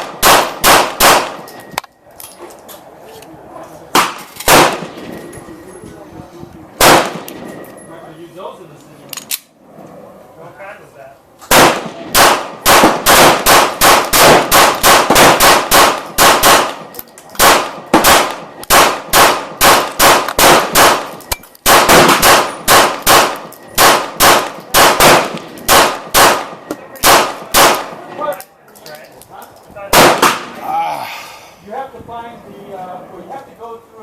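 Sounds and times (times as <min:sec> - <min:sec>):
pistol shots: 0:00.0 - 0:01.5, 0:03.9 - 0:05.1, 0:06.8 - 0:07.5, 0:11.5 - 0:28.0, 0:29.9 - 0:30.6.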